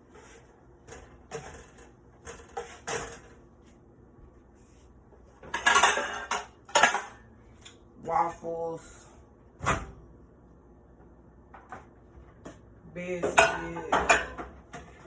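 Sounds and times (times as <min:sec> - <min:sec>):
kitchenware clatter: 0:00.2 - 0:03.4, 0:05.4 - 0:07.3, 0:13.2 - 0:15.0.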